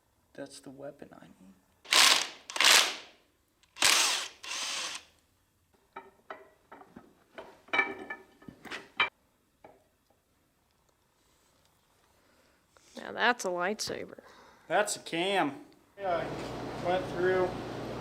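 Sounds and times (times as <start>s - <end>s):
power tool bursts on bolts: 1.9s - 3.1s, 3.7s - 5.1s.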